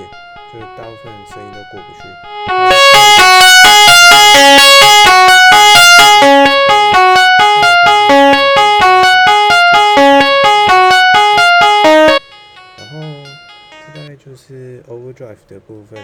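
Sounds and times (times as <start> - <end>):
overdriven electric guitar arpeggio: 2.2 - 14.1.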